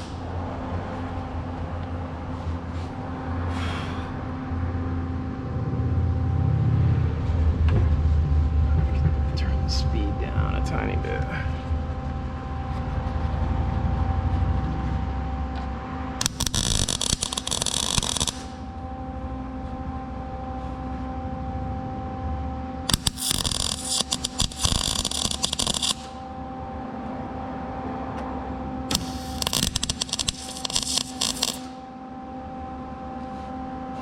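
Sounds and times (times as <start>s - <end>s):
welding arc crackling: 0.0s - 0.3s, 16.2s - 18.8s, 22.9s - 26.3s, 28.9s - 32.0s
steady electrical hum: 0.0s - 34.0s.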